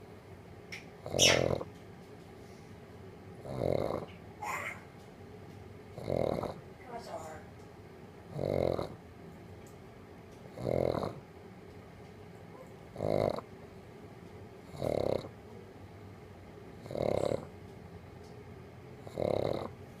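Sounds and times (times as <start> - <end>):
snoring: 3.4 - 4.1, 6.0 - 6.6, 8.3 - 9.0, 10.6 - 11.2, 13.0 - 13.4, 14.7 - 15.3, 16.8 - 17.5, 19.0 - 19.8.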